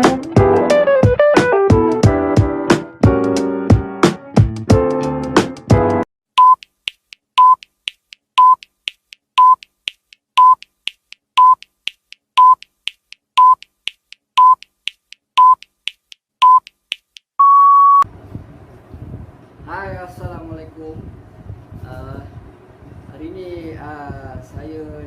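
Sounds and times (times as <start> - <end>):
electronic timer beeps: 6.4 - 6.7, 7.4 - 7.7, 8.4 - 8.7, 9.4 - 9.7, 10.4 - 10.7, 11.4 - 11.7, 12.4 - 12.7, 13.4 - 13.7, 14.4 - 14.7, 15.4 - 15.7, 16.4 - 16.7, 17.4 - 18.0.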